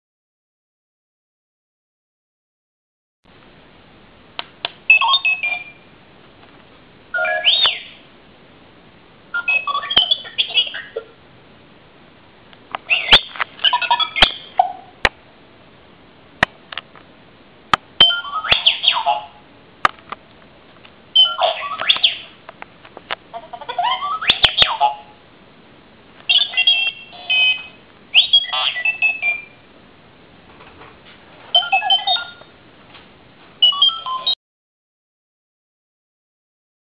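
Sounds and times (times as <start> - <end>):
robot toy beeps and whistles: 4.9 - 5.8, 7.2 - 8.0, 9.4 - 11.0, 12.9 - 14.9, 18.0 - 19.4, 21.2 - 22.4, 23.8 - 25.1, 26.3 - 29.6, 31.5 - 32.5, 33.6 - 34.4.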